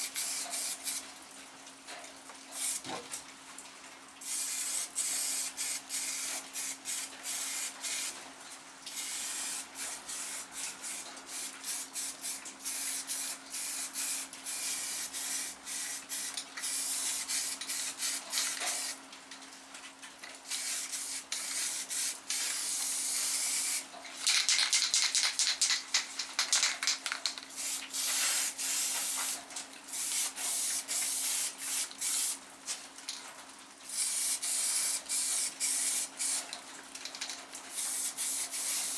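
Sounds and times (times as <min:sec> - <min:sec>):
spray can hissing: 0:00.1 - 0:01.0, 0:02.6 - 0:02.8, 0:04.2 - 0:08.1, 0:08.9 - 0:19.0, 0:20.5 - 0:32.4, 0:33.9 - 0:36.5, 0:37.8 - 0:38.9.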